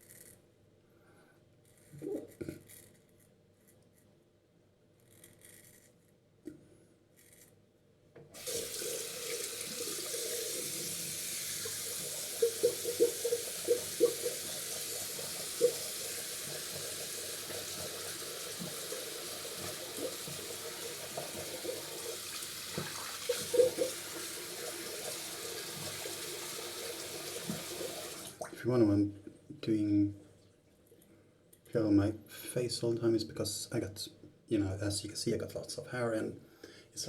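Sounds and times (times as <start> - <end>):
tap water running into sink: 8.4 - 28.6.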